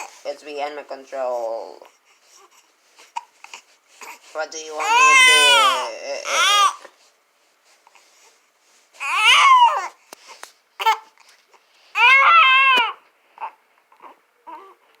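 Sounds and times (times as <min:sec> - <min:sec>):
baby whimpering: 0:01.8 - 0:06.9, 0:09.0 - 0:10.0, 0:10.8 - 0:11.2, 0:12.0 - 0:14.9
baby crying: 0:04.8 - 0:06.8, 0:09.0 - 0:10.0, 0:10.8 - 0:11.1, 0:12.0 - 0:14.8.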